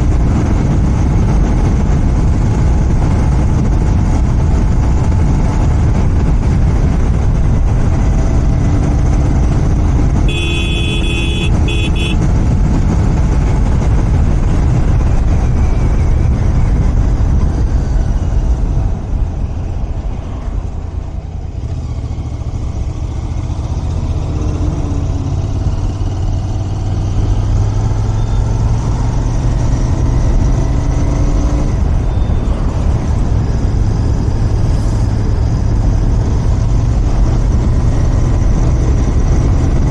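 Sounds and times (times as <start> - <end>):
motorcycle engine running: 0.0 - 39.9
horn: 10.3 - 12.2.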